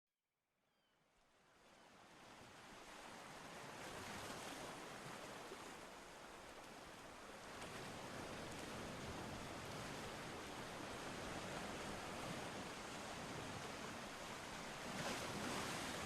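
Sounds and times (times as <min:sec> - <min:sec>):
water rushing: 0:02.0 - 0:16.0.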